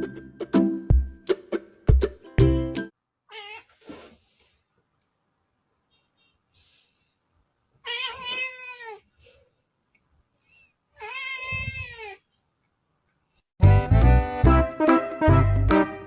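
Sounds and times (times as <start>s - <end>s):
cat meowing: 3.3s - 3.8s, 7.8s - 9.1s, 11.0s - 12.3s.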